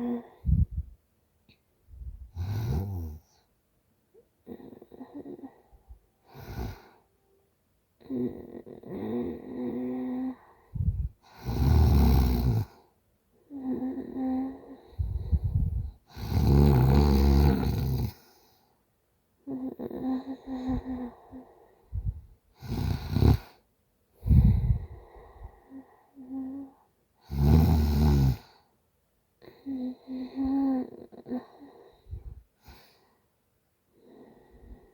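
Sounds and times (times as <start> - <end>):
woman snoring: 0.0 - 0.7, 2.3 - 3.3, 4.4 - 7.0, 8.0 - 12.8, 13.5 - 18.3, 19.4 - 21.7, 22.6 - 23.6, 24.2 - 28.6, 29.4 - 32.0
soft moaning breaths: 0.0 - 3.5, 4.1 - 7.4, 8.0 - 18.8, 19.4 - 28.8, 29.4 - 33.3, 33.9 - 34.9.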